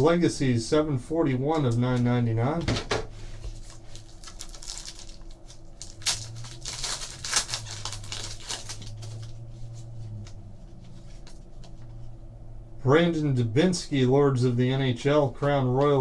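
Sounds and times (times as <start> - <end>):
low electrical hum: 0.0 - 16.0
foil wrapper crinkling: 3.4 - 9.5.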